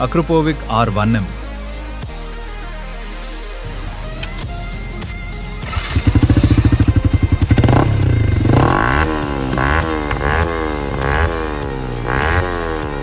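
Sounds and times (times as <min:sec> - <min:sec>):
motorcycle engine revving: 0:05.5 - 0:13.0.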